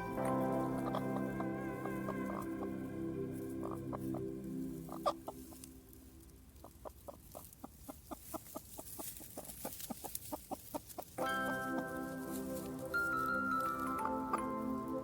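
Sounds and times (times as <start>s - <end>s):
background music: 0.0s - 6.7s, 11.1s - 15.0s
hen clucking: 0.0s - 12.8s, 13.7s - 14.7s.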